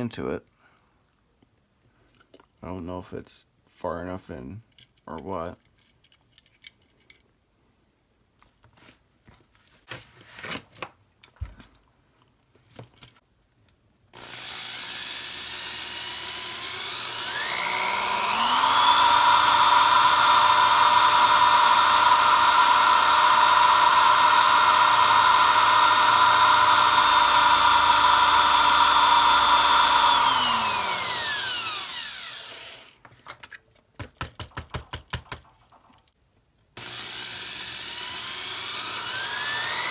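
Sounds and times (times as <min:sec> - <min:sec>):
power drill whining: 0:14.2 - 0:33.0, 0:36.8 - 0:39.9.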